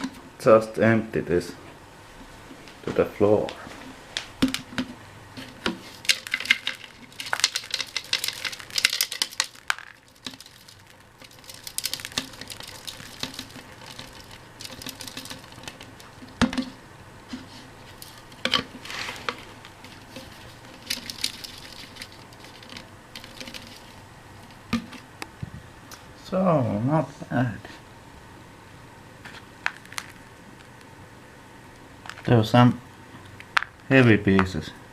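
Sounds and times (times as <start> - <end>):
debris clicking out of container: 5.4 - 16.7, 17.9 - 25.0, 29.7 - 30.8.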